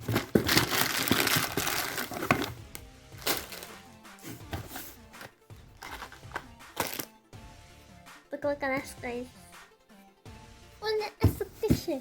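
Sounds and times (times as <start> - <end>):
objects rustling and knocking: 0.0 - 7.0, 11.2 - 12.0
soft r and b music: 0.0 - 12.0.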